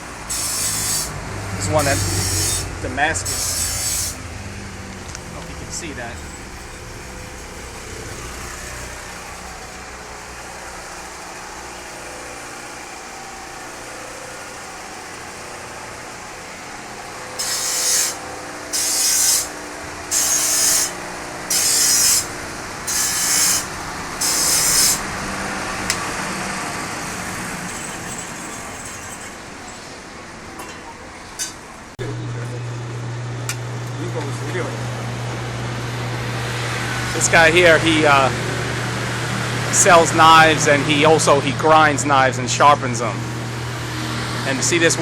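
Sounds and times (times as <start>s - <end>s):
knife rasping on grinding wheel: 0.0s - 4.3s, 17.0s - 30.0s.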